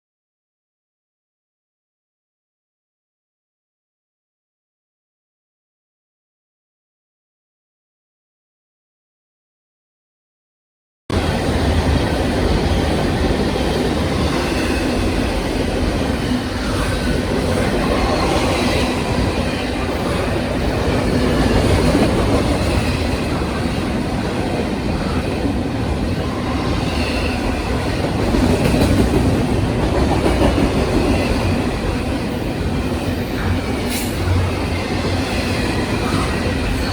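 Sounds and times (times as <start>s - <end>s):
train wheels rumbling on rails: 11.1s - 36.9s.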